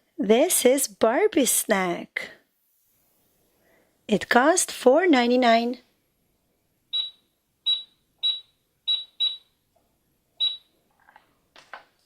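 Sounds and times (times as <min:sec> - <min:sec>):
toy cash register beeps: 0:07.0 - 0:09.4.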